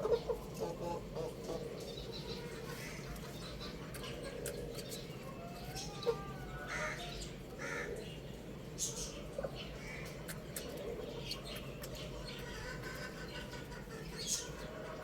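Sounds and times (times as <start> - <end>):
young rooster chirping: 0.0 - 7.4
steady background noise: 0.0 - 15.0.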